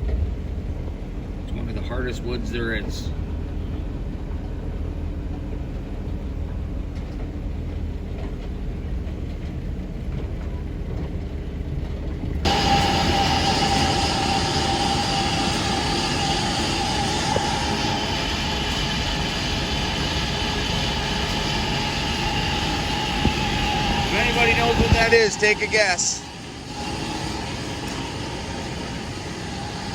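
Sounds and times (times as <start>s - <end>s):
sawmill machinery humming: 12.2s - 29.9s
saw whining through log: 12.5s - 29.9s.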